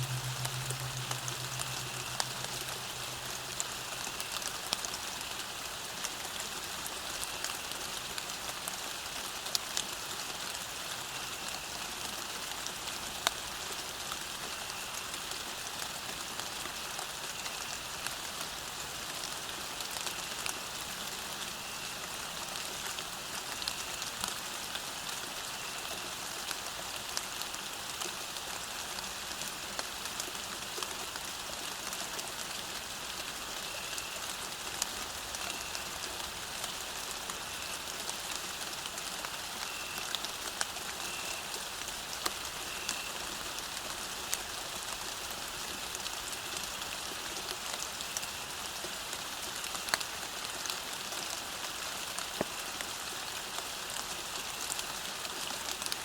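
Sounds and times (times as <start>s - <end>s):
faint high chirps: 0.0s - 4.0s
rain falling on a road: 0.0s - 56.0s.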